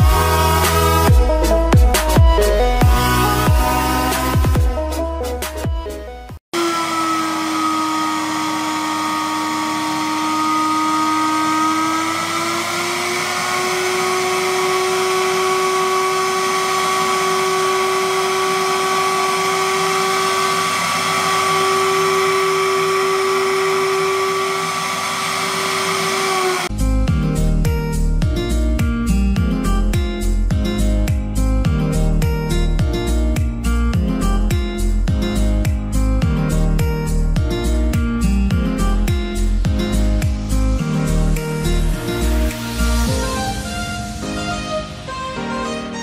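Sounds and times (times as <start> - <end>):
blender motor whining: 6.5 - 26.7.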